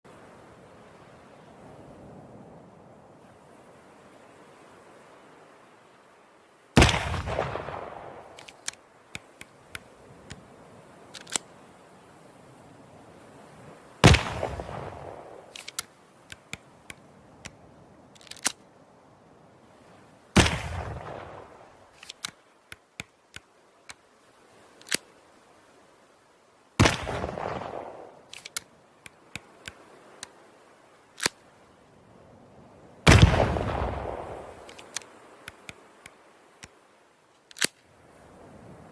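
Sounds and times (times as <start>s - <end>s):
faint background hiss: 0.0s - 38.9s
small clicks: 8.4s - 10.4s, 11.1s - 11.5s, 15.5s - 18.6s, 21.9s - 24.0s, 24.8s - 25.1s, 28.3s - 30.4s, 31.2s - 31.4s, 34.6s - 37.9s.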